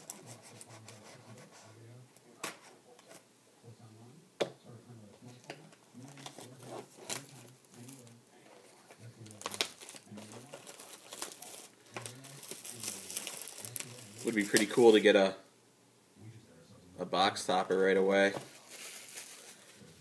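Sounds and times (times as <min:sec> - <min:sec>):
plastic wrapping crinkling: 0:06.0 - 0:15.0, 0:18.0 - 0:19.9.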